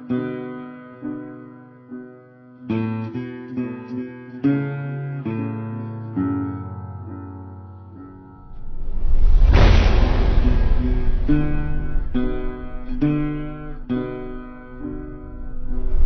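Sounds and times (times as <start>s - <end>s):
acoustic guitar picking: 12.1s - 15.7s.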